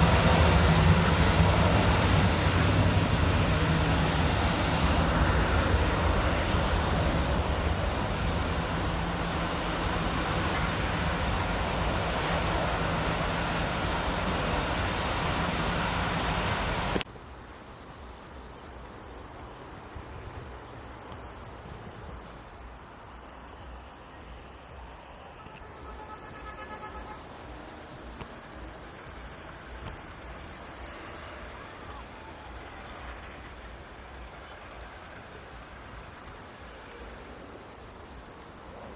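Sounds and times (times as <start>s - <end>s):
aircraft engine rushing: 0.0s - 17.1s
crickets chirping: 0.0s - 38.9s.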